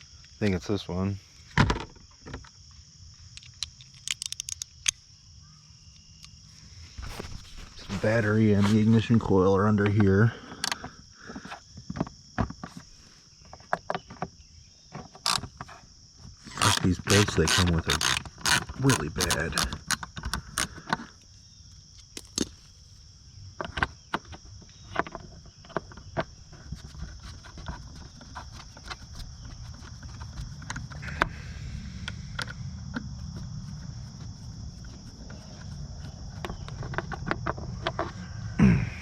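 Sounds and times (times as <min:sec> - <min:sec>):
crickets chirring: 0:00.0 - 0:39.0.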